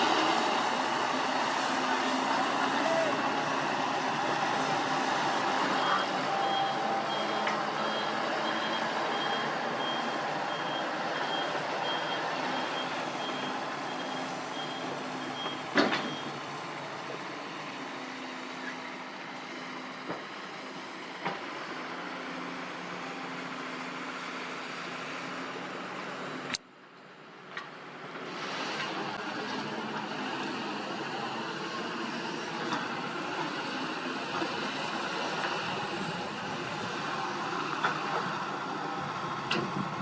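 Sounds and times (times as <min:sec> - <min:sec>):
diesel engine running: 0:00.0 - 0:26.6
reversing alarm beeping: 0:05.6 - 0:16.4.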